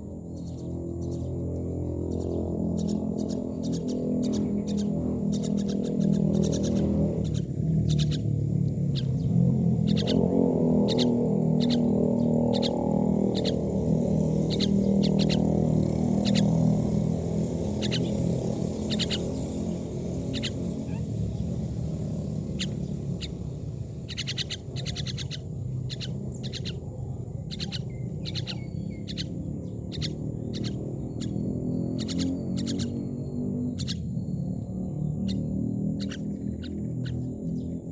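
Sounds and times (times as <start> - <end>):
myna birds chirping: 0.0 - 37.9.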